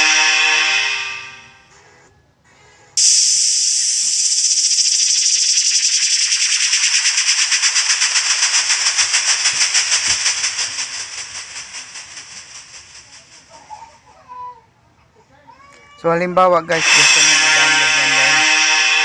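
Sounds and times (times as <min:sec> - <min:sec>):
tone-like sound effect: 0:03.0 - 0:13.4, 0:16.8 - 0:19.0
loud flickering hiss: 0:03.0 - 0:14.0, 0:16.8 - 0:19.0.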